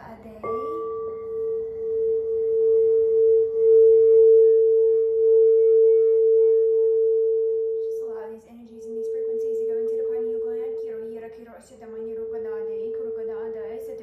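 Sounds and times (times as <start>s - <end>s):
crystal singing bowl ringing: 0.0s - 11.1s.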